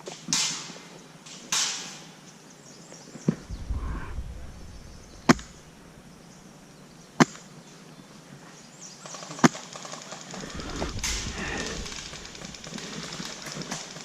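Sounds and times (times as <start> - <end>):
rustling movement: 3.3 - 6.8, 10.2 - 14.0.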